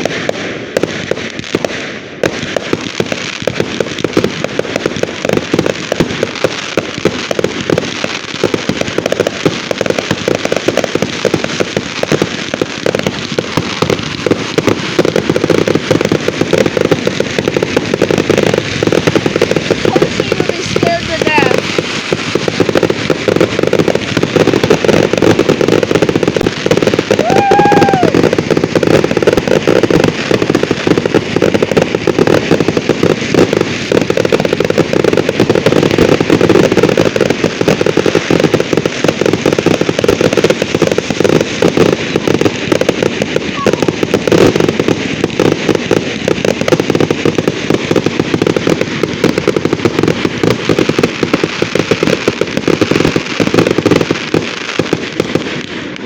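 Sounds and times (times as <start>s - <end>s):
fireworks crackling bangs: 0.0s - 56.0s
firework whistle: 25.8s - 30.6s, 42.3s - 45.8s.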